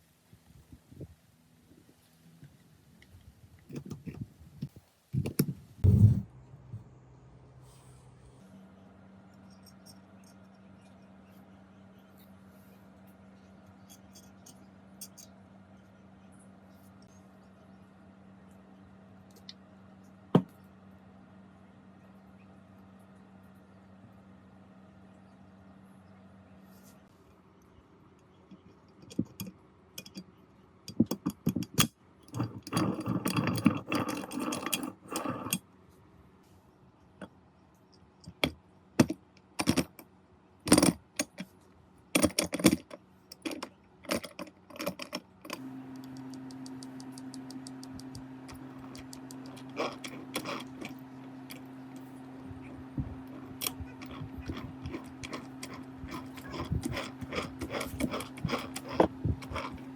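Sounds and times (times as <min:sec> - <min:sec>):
metal parts clicking and knocking: 0:13.9 - 0:15.3, 0:28.9 - 0:30.3, 0:30.9 - 0:35.6, 0:38.2 - 0:40.0, 0:40.7 - 0:41.5, 0:42.2 - 0:45.6, 0:46.6 - 0:51.6, 0:53.3 - 0:59.9
small motor humming: 0:45.5 - 0:59.9.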